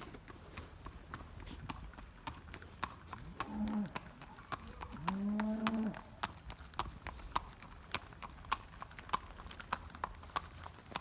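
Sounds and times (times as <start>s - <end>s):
cow mooing: 5.0s - 6.0s.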